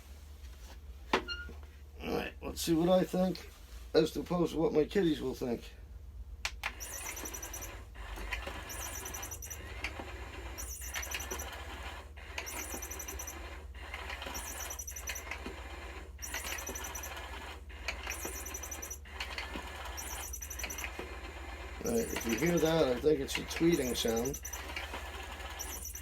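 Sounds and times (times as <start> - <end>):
toy motor whirring: 6.7 - 15.6, 16.2 - 26.0
electronic tweeting chirps: 6.8 - 7.7, 8.6 - 9.6, 10.6 - 11.5, 12.5 - 13.3, 14.3 - 15.2, 16.2 - 17.2, 18.1 - 19.0, 19.9 - 20.9, 21.8 - 24.7, 25.6 - 26.0.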